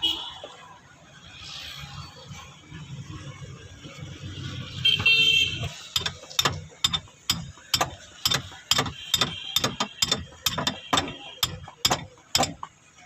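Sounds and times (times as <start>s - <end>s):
ratchet wrench clicking: 5.7s - 12.7s.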